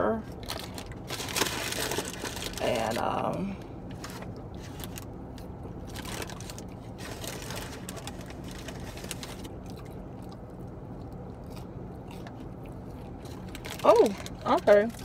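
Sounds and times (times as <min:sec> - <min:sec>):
car engine idling: 0:00.0 - 0:15.0
food packaging crinkling: 0:00.4 - 0:03.2, 0:03.9 - 0:10.3, 0:13.2 - 0:15.0.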